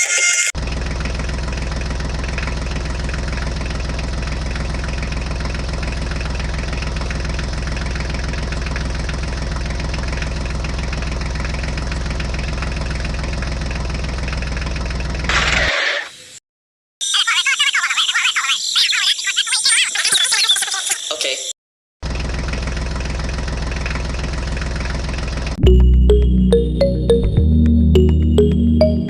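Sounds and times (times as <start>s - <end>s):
small engine idling: 0.6s - 15.6s, 22.0s - 25.6s.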